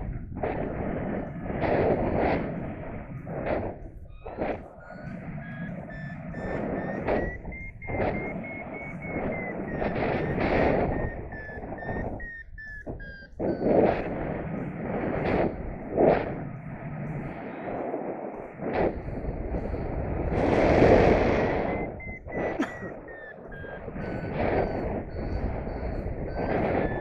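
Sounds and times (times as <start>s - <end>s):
wind rushing across microphone: 0.0s - 27.0s
variometer beeping: 4.1s - 14.2s, 20.3s - 27.0s.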